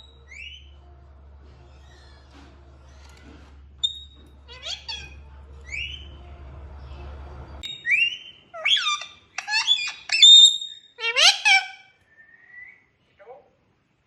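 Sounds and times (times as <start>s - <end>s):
parrot calling and whistling: 0.0s - 0.8s, 3.8s - 6.2s, 7.6s - 12.8s
low hum: 0.0s - 8.6s.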